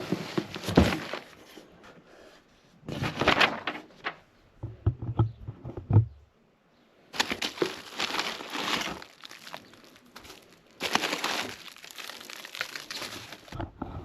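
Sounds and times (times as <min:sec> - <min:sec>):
rustling scrape: 0:07.2 - 0:14.0.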